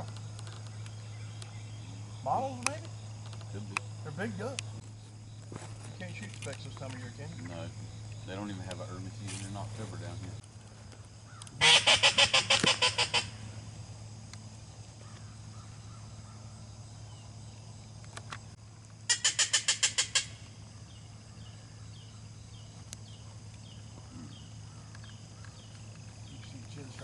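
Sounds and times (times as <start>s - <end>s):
geese honking: 11.5s - 13.6s, 19.1s - 20.6s.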